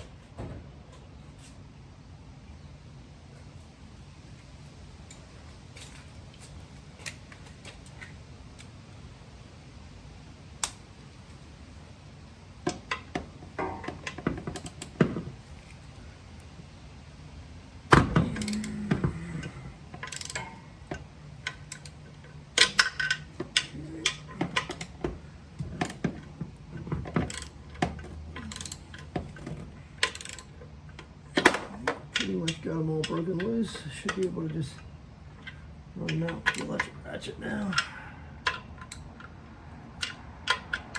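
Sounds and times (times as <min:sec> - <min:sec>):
hand tools clicking on bolts: 0:17.9 - 0:40.9.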